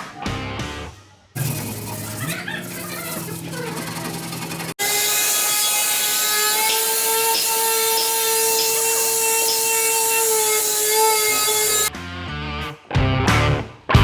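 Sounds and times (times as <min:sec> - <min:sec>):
electric power tool whining: 0:01.4 - 0:11.9.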